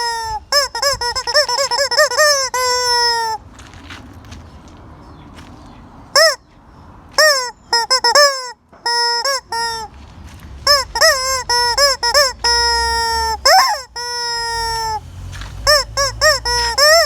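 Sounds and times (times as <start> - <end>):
rubber chicken toy squawking: 0.0 - 3.4, 6.2 - 6.4, 7.2 - 10.0, 10.6 - 15.0, 15.6 - 17.0.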